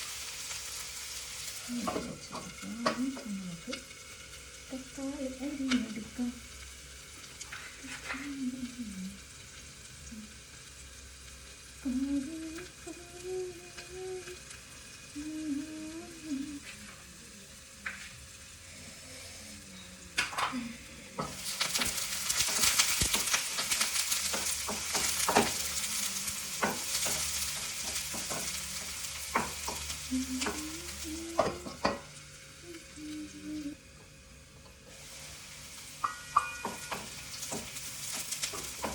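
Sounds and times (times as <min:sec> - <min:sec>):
food sizzling in hot oil: 0:00.0 - 0:38.9
spatula scraping a pan: 0:36.0 - 0:38.9.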